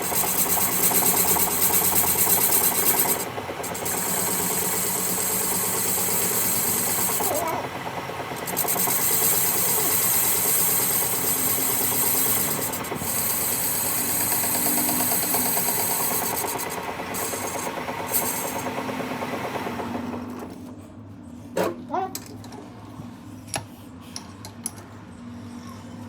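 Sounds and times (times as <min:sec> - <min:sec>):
abrasive paper rasping on spinning metal: 0:00.0 - 0:18.8.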